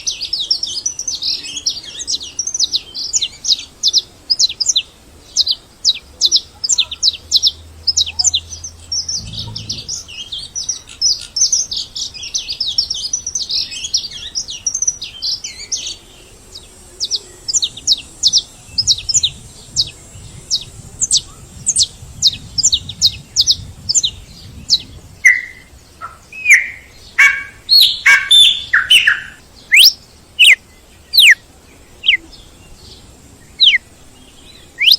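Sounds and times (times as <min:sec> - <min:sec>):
birds chirping: 0:00.0 - 0:34.9
lower notes sliding downward: 0:08.4 - 0:10.6.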